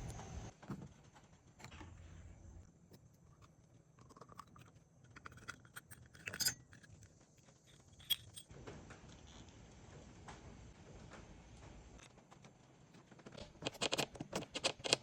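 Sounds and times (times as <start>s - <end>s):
metal parts and tools clinking: 4.0s - 8.5s.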